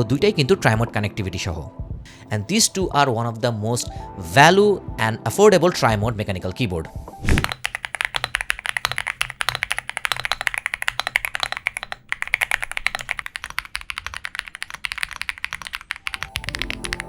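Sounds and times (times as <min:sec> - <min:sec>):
fast typing on mechanical keyboard: 0:07.4 - 0:17.0.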